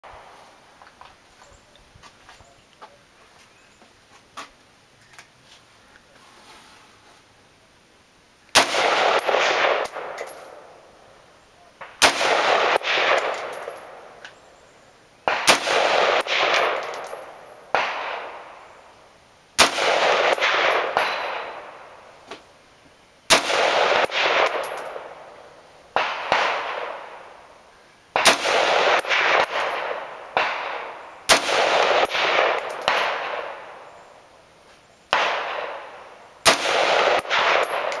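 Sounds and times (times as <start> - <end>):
rifle shots echoing: 8.6 - 10.8, 12.0 - 14.2, 15.3 - 18.5, 19.6 - 21.8, 23.3 - 25.3, 26.0 - 27.3, 28.2 - 33.8, 35.1 - 38.0.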